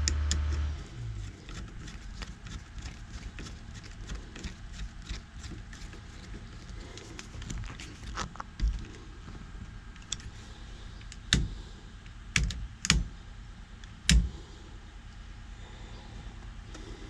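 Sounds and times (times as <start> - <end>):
small parts clicking and tapping: 0.0 - 9.0, 9.9 - 10.3, 11.0 - 13.1.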